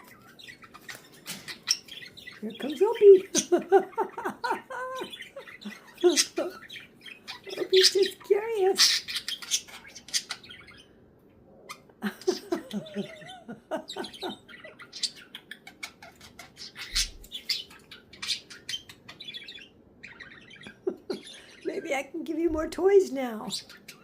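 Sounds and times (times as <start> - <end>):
budgerigar chattering: 0.0 - 10.9, 13.9 - 21.5.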